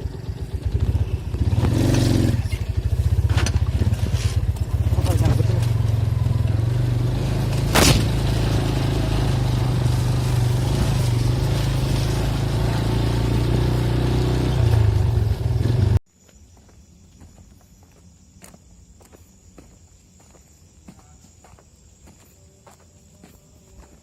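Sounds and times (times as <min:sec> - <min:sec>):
engine running: 0:00.0 - 0:16.0.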